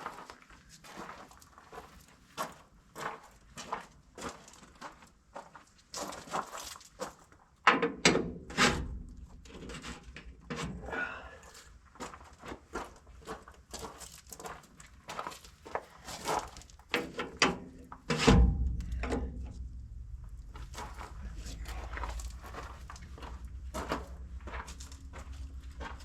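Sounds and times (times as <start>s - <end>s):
tools knocking and clanking on metal: 16.9s - 26.0s
metal scrape: 18.1s - 26.0s
loud bangs: 18.2s - 26.0s.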